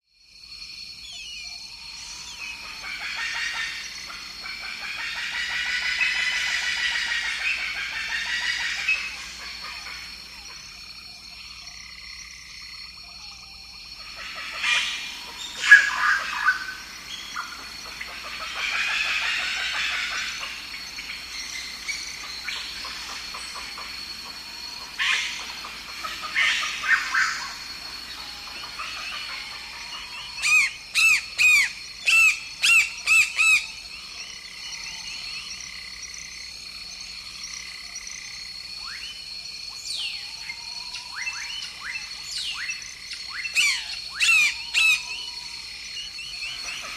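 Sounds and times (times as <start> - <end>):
high-pitched insect drone: 0.2 - 46.9
bird calls: 1.0 - 12.0, 13.0 - 35.7, 38.8 - 46.9
frog calls: 1.0 - 46.9
rapid repeated calls: 2.0 - 10.9, 14.0 - 33.8.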